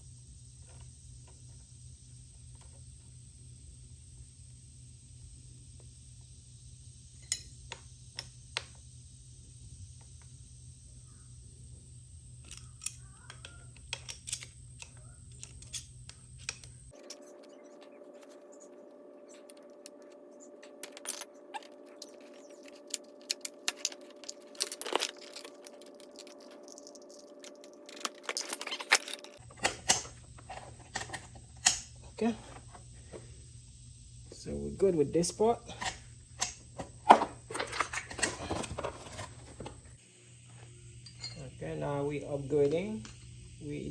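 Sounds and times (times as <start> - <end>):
steady background hum: 0.0 - 43.9
metal fittings clicking and clinking: 20.8 - 31.9.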